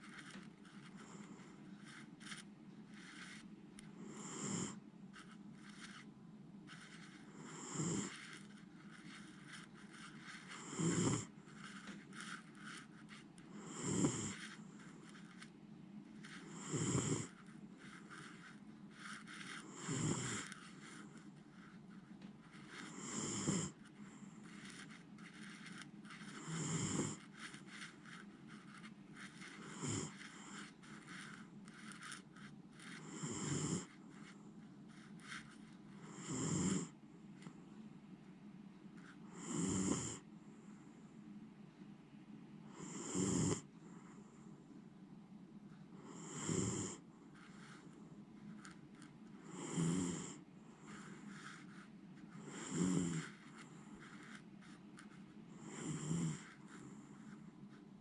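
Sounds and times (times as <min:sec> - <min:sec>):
dog snoring: 0:00.8 - 0:03.4, 0:04.0 - 0:04.8, 0:06.7 - 0:15.4, 0:16.2 - 0:21.7, 0:22.6 - 0:35.4, 0:36.0 - 0:37.0, 0:39.3 - 0:40.2, 0:42.7 - 0:44.4, 0:46.0 - 0:47.9, 0:49.4 - 0:51.8, 0:52.4 - 0:54.4, 0:55.5 - 0:57.4.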